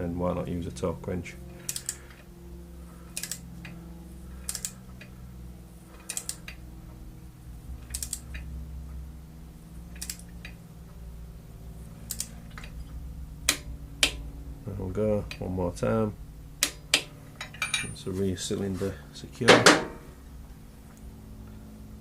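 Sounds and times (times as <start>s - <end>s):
steady low hum: 0.0s - 22.0s
torque wrench clicking: 1.6s - 2.0s, 3.2s - 3.4s, 4.4s - 4.8s, 6.0s - 6.6s, 7.9s - 8.4s, 10.0s - 10.3s, 12.1s - 12.7s.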